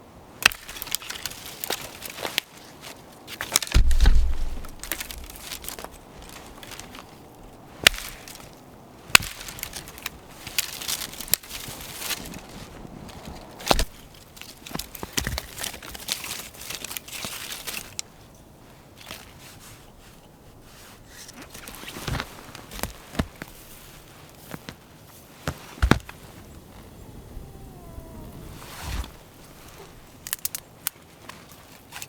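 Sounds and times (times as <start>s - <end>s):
rustling and crunching in snow: 0.6s - 32.0s
sharp knocks: 3.8s - 4.9s.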